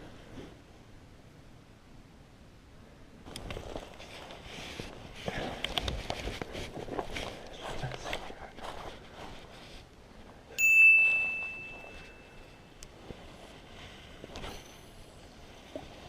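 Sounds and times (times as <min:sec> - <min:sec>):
faint background noise: 0:00.0 - 0:16.0
bright bell-like ding: 0:10.6 - 0:12.7.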